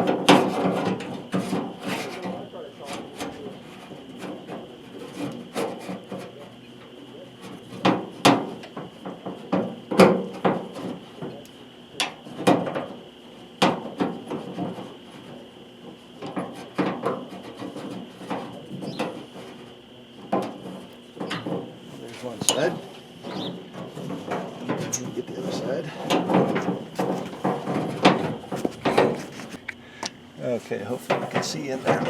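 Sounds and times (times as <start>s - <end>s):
hand tools knocking and scraping metal: 0.0s - 6.5s, 13.6s - 29.8s, 30.4s - 32.0s.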